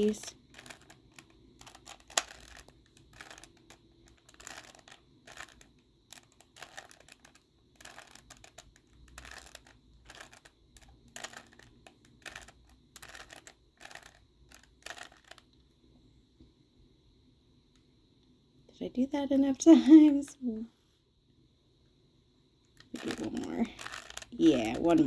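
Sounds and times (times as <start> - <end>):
puzzle cube clacking turns: 0.0 - 15.6, 22.7 - 25.0.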